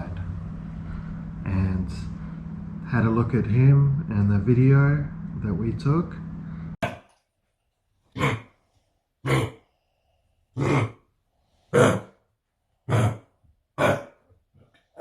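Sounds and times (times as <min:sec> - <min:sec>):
puppy coughing: 0:08.2 - 0:08.5, 0:09.2 - 0:09.6, 0:10.6 - 0:11.0, 0:11.7 - 0:12.2, 0:13.8 - 0:14.2.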